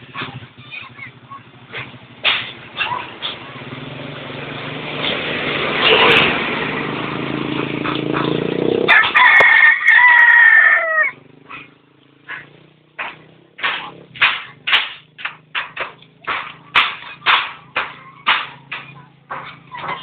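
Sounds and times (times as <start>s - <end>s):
rooster crowing: 8.9s - 11.2s.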